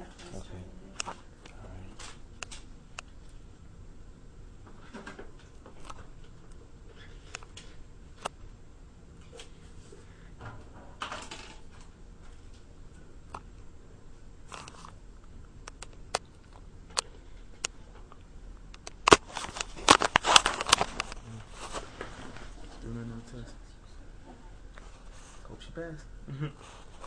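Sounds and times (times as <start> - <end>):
sharp crackling clicks: 1.0 - 3.2, 14.5 - 21.2.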